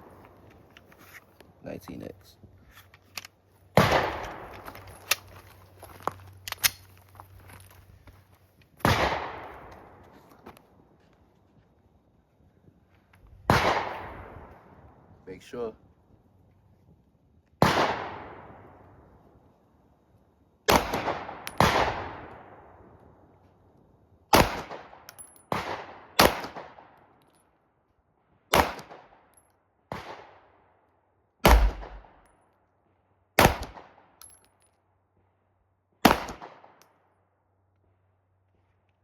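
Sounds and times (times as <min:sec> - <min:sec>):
pistol shots echoing: 0:31.4 - 0:32.2, 0:33.4 - 0:34.0, 0:36.0 - 0:36.7.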